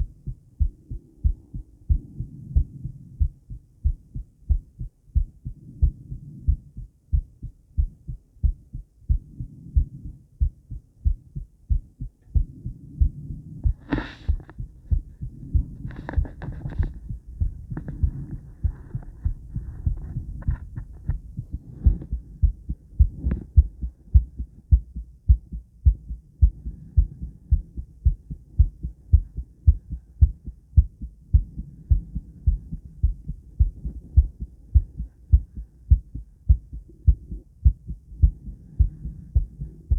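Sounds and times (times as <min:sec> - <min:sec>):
heartbeat thumps: 0:00.0 - 0:39.9.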